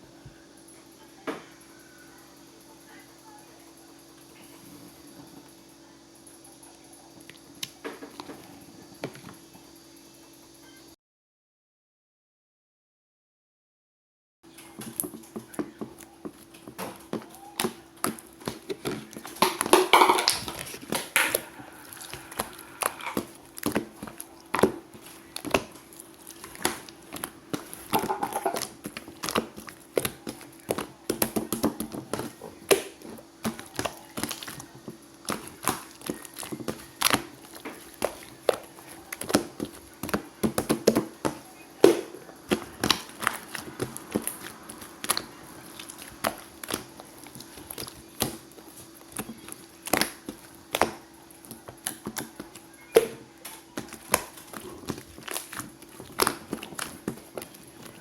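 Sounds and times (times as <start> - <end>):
faint steady hum: 0.0 - 11.0, 14.5 - 58.0
slime squishing by hand: 14.7 - 58.0.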